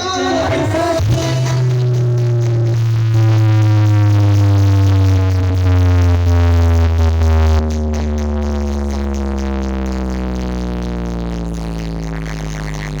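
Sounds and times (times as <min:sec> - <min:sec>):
synth tone sliding downward: 0:00.0 - 0:09.7
loud electronic music: 0:00.0 - 0:13.0.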